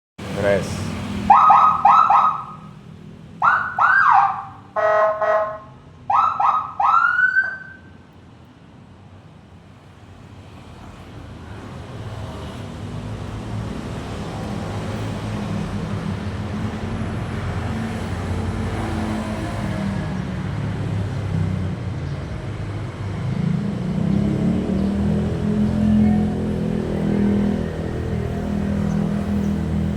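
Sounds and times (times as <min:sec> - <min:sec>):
motorcycle siren whoops: 0:01.3 - 0:02.7, 0:03.4 - 0:07.9
buzzing horn blasts: 0:04.0 - 0:05.8.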